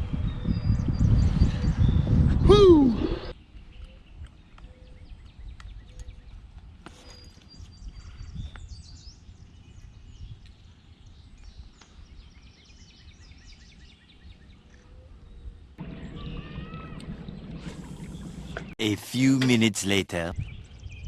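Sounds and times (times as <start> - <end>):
low outdoor rumble: 15.8 - 19.1.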